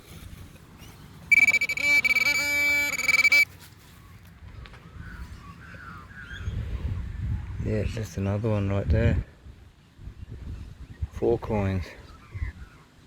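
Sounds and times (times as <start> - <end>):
metal detector high-pitched tone: 1.3 - 3.5.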